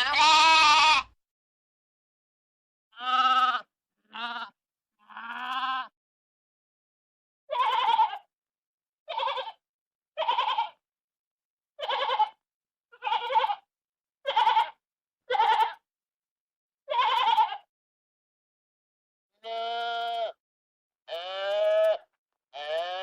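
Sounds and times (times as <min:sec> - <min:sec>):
sheep bleating: 0:00.0 - 0:01.2, 0:02.9 - 0:06.0, 0:07.5 - 0:08.3, 0:09.1 - 0:09.6, 0:10.2 - 0:10.8, 0:11.8 - 0:15.8, 0:16.9 - 0:17.7, 0:19.4 - 0:20.4, 0:21.1 - 0:23.0.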